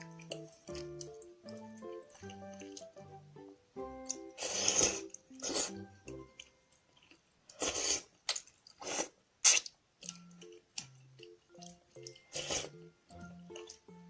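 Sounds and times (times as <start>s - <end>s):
soft background music: 0.0s - 7.2s, 10.0s - 14.0s
chewing and slurping noodles: 4.3s - 13.8s.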